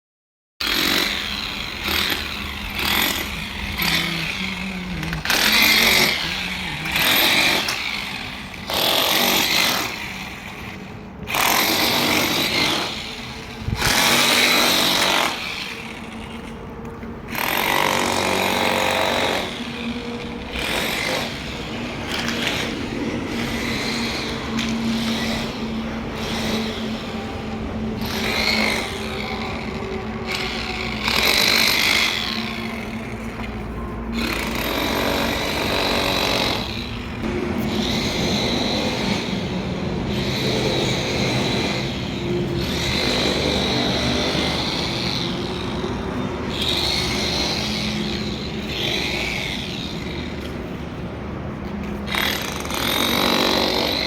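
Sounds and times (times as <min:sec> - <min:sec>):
power tool running in bursts: 0:00.6 - 0:16.6, 0:17.3 - 0:33.5, 0:34.2 - 0:50.5.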